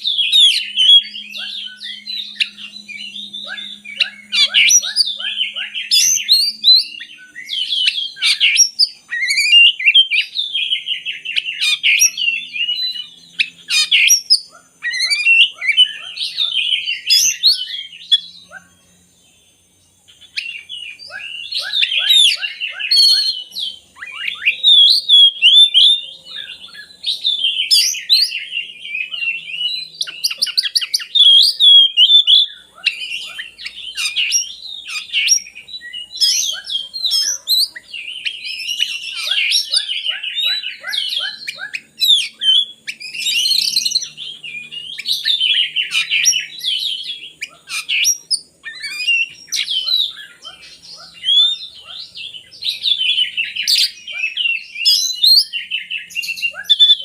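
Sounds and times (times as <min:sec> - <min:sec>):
bird singing whistles and trills: 0:00.0 - 0:57.0.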